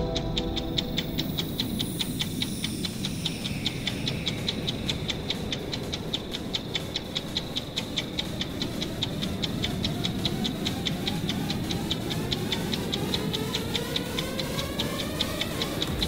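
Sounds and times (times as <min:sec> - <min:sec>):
clock ticking: 0:00.0 - 0:16.0
low steady drone: 0:00.0 - 0:16.0.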